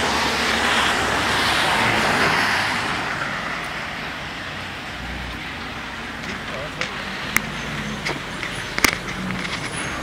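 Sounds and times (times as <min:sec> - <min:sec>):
tyres hissing on wet road: 0:00.0 - 0:06.2.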